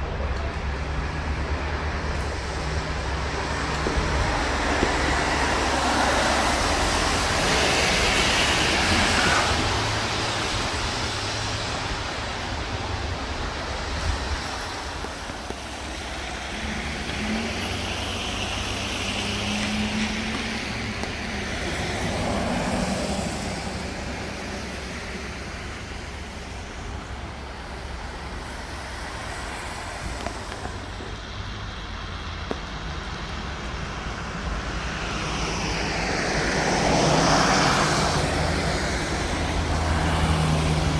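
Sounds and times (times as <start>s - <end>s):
cars driving past: 0.0s - 40.9s
low engine rumble: 0.0s - 40.9s.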